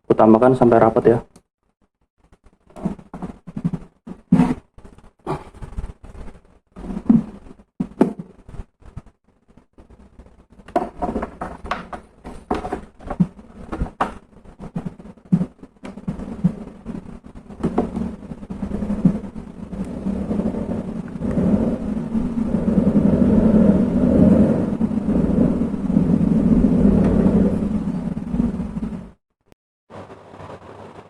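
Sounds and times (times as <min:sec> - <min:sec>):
low rumble: 0:16.1 - 0:29.2.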